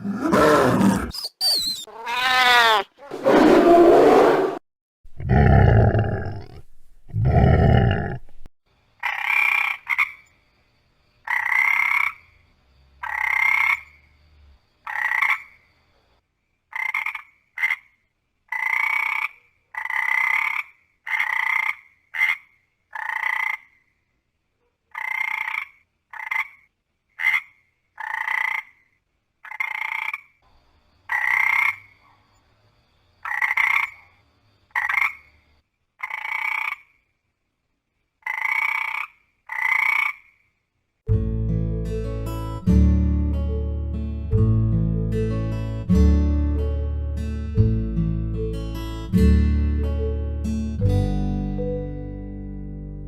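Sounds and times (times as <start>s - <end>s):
frog croaking: 9.0s - 10.4s, 11.2s - 15.7s, 16.7s - 24.0s, 24.9s - 30.4s, 31.1s - 32.2s, 33.2s - 35.4s, 36.0s - 37.1s, 38.2s - 40.6s.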